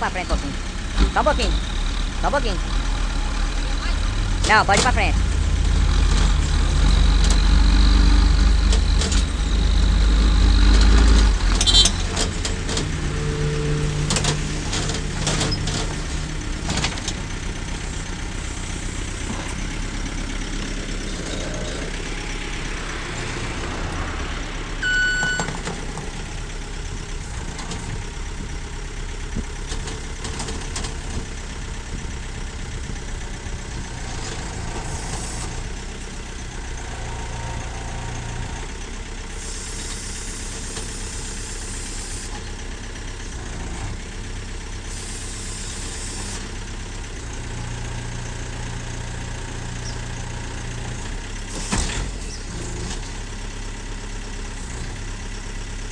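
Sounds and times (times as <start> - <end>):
vehicle engine running: 0.0 - 55.9
short beep: 24.8 - 25.5.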